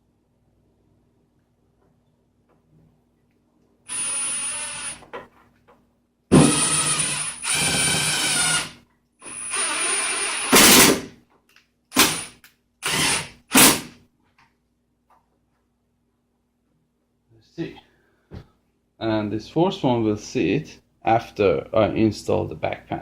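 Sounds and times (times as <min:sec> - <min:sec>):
power drill driving screws: 0:03.9 - 0:05.0, 0:06.3 - 0:11.1, 0:11.9 - 0:13.9.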